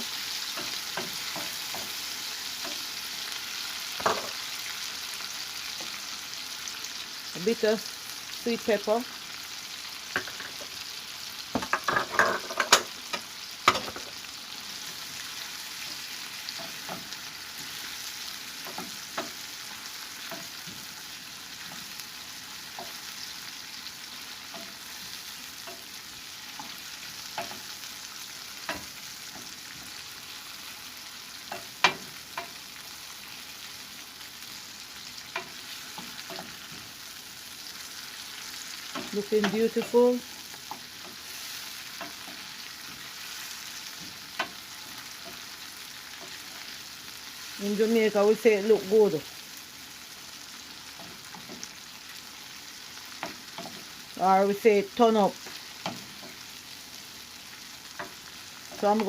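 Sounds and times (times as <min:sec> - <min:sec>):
vegetables sizzling in oil: 0:00.0 - 0:59.0.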